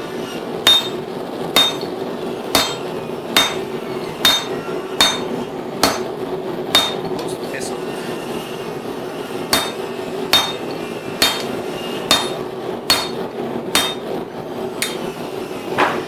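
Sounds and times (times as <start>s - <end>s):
hammer striking steel on anvil: 0.7s - 7.4s, 9.5s - 14.2s, 14.8s - 15.1s.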